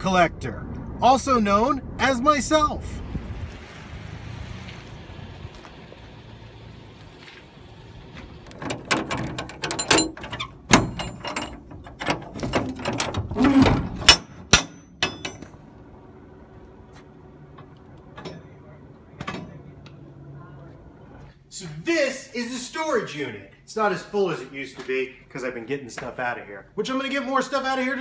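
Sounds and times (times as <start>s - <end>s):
metal door rattling and clanking: 8.2s - 15.7s
latch clicks: 8.4s - 15.6s.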